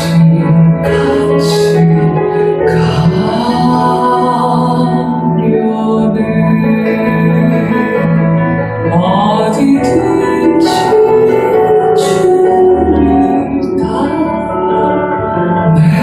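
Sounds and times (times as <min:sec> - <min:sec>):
person singing: 0:00.0 - 0:16.0
piano and keyboard: 0:00.0 - 0:16.0.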